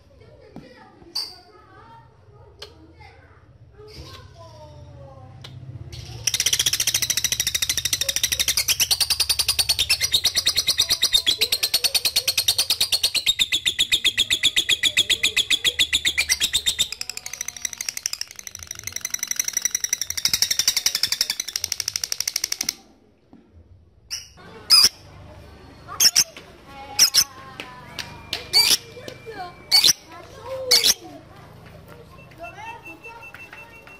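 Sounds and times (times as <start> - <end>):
lovebird chattering trill: 6.0 - 22.7, 24.1 - 25.0, 25.9 - 26.4, 27.0 - 27.3, 28.3 - 29.0, 29.6 - 31.0.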